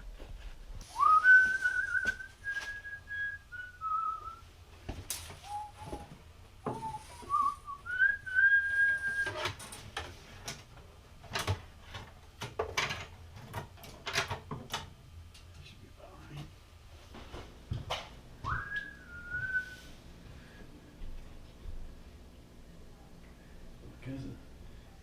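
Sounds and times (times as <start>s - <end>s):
person whistling a tune: 0.9s - 4.4s, 5.4s - 6.1s, 6.7s - 9.4s, 18.5s - 19.9s.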